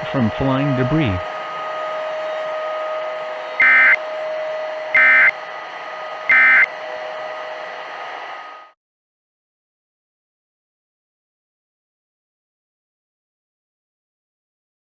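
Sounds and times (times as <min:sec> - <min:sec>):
faint hum: 0:00.0 - 0:08.8
data tone bursts: 0:03.6 - 0:04.0, 0:05.0 - 0:05.3, 0:06.3 - 0:06.7.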